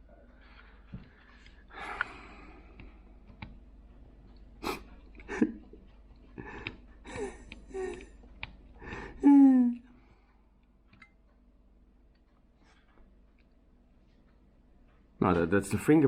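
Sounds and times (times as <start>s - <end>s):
person breathing: 0.3s - 3.2s, 6.4s - 8.1s, 8.8s - 10.5s
small clicks and taps of parts: 2.8s - 3.6s, 7.5s - 8.7s, 10.6s - 11.4s.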